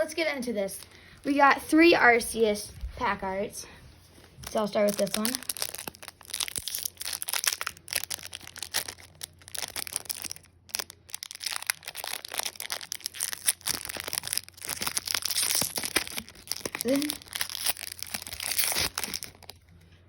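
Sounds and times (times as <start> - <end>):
foil wrapper crinkling: 4.2 - 19.8.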